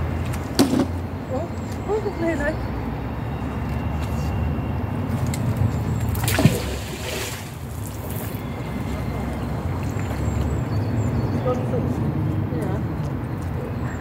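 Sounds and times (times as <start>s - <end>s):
water splash: 6.0s - 8.4s.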